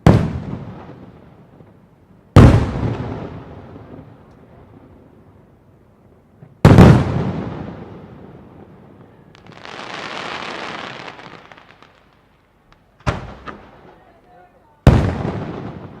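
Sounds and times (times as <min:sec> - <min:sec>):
sharp firework bang: 0:00.0 - 0:00.8, 0:13.0 - 0:13.7
firework shell booming: 0:13.0 - 0:13.9, 0:14.9 - 0:16.0.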